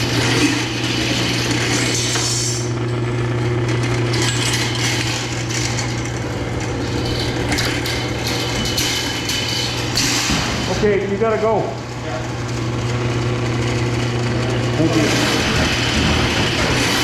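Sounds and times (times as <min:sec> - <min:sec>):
low machine hum: 0:00.0 - 0:17.0
metallic clattering and clinking: 0:03.8 - 0:11.0.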